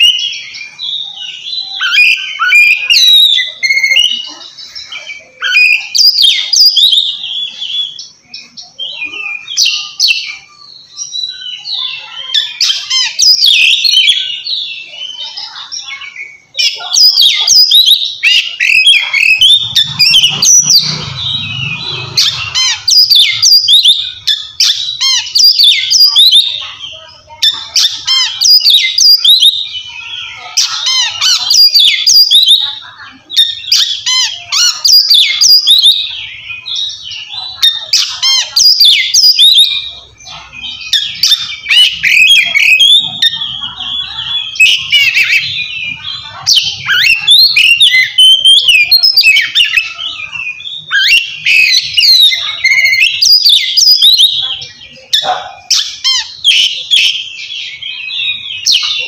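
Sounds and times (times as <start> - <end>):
magpie-robin singing: 0.0 - 59.0.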